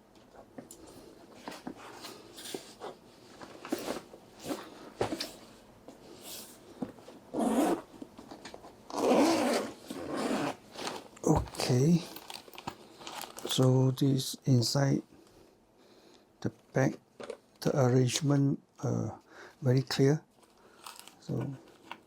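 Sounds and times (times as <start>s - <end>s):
zipper unzipping: 7.3s - 7.9s, 8.9s - 10.6s
handling clicks and rustles: 10.8s - 13.6s.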